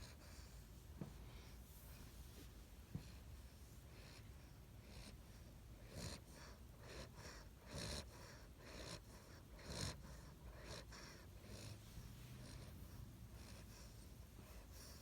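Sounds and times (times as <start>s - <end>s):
soft breaths: 0.0s - 15.0s
puppy snoring: 3.9s - 15.0s.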